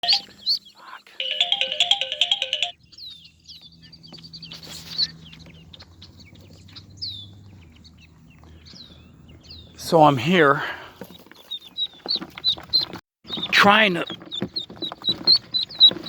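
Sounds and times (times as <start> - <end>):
phone ringtone melody: 0.0 - 0.3, 1.2 - 2.8
ducklings peeping: 0.0 - 1.3, 2.8 - 10.2, 10.9 - 16.0.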